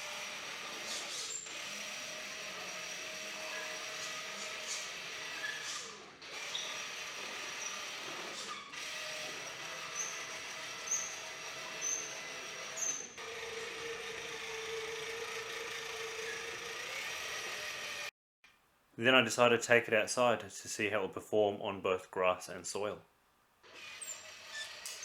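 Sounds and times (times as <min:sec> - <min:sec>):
electric motor and gears whirring: 0:00.0 - 0:18.1, 0:23.6 - 0:25.0.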